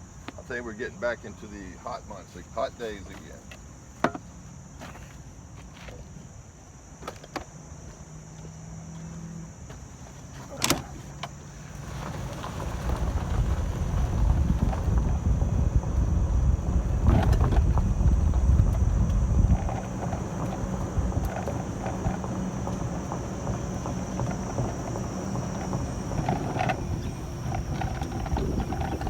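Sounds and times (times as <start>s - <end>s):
golf cart driving rumble: 10.4s - 29.0s
wind on microphone: 11.9s - 29.0s.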